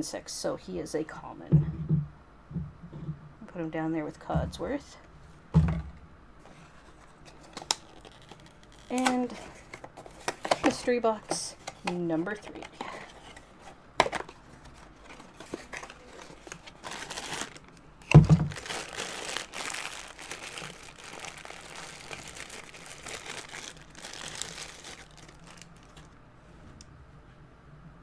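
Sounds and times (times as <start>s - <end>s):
crinkly wrapping crumpled: 6.5s - 26.2s.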